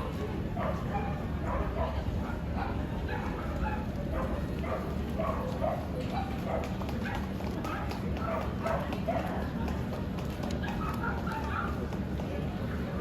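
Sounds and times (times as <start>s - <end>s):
dog barking: 0.6s - 9.4s, 10.6s - 11.8s.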